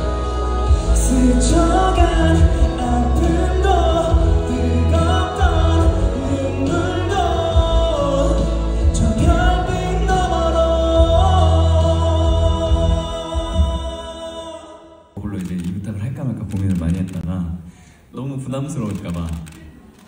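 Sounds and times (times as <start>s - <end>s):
backing track with deep bass: 0.0s - 14.4s
person singing a slow ballad: 0.0s - 15.2s.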